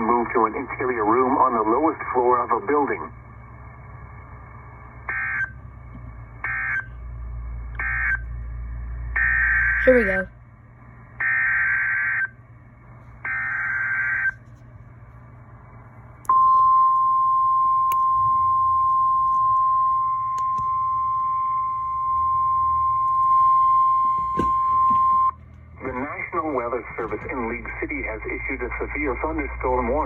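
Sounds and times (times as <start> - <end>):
steady single-pitch alarm tone: 3.2 - 5.6, 6.2 - 10.2, 11.2 - 12.4, 13.2 - 14.4, 16.3 - 25.4.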